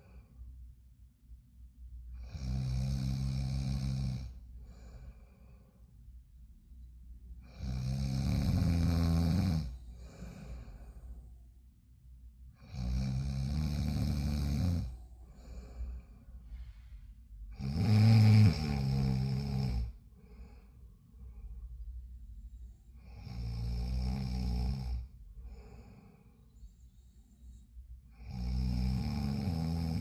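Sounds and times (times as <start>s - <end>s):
soft breaths: 0.0s - 2.7s, 3.3s - 30.0s
loud snoring: 2.2s - 4.4s, 7.4s - 10.8s, 12.6s - 15.6s, 17.5s - 20.0s, 23.0s - 25.9s, 28.1s - 30.0s.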